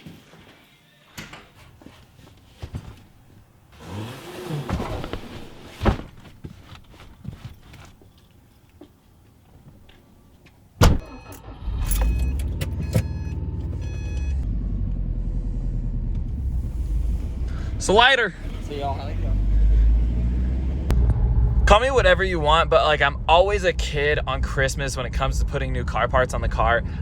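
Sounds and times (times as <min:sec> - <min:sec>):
rustling: 0:01.6 - 0:10.6
car engine starting and idling: 0:03.6 - 0:05.8, 0:10.8 - 0:27.0
car door slamming: 0:10.8 - 0:11.1.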